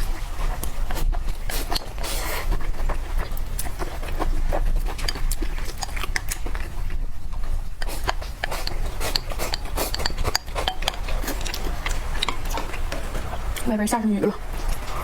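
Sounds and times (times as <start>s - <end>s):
chewing crunches: 0.0s - 13.7s
utensils clinking on dishes: 8.6s - 11.6s.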